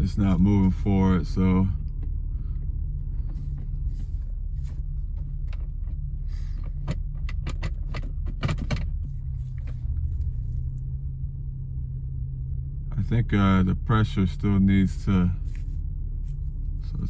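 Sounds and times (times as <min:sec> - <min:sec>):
car engine idling: 0:00.0 - 0:17.0
sharp clicks and rattles: 0:01.8 - 0:10.8.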